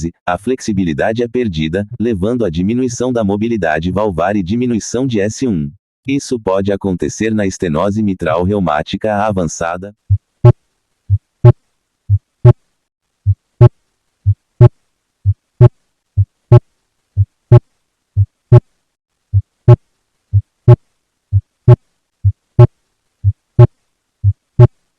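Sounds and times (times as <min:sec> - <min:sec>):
heartbeat: 0:10.0 - 0:12.6, 0:13.2 - 0:17.6, 0:18.2 - 0:18.6, 0:19.3 - 0:24.8.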